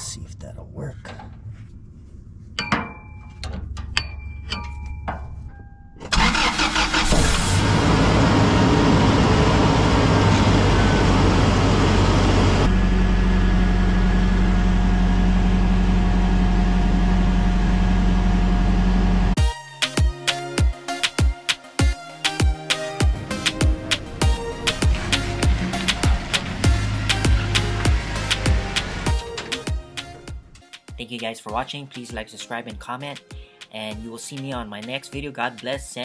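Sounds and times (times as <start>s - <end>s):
car engine cranking and running: 6.1s - 19.4s, 23.1s - 30.6s.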